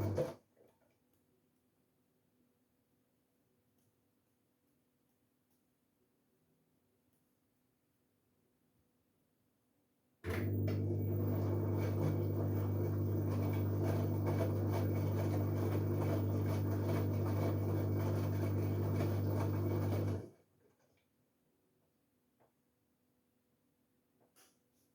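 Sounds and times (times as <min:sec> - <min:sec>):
washing machine humming: 0:00.0 - 0:00.3, 0:10.3 - 0:20.4.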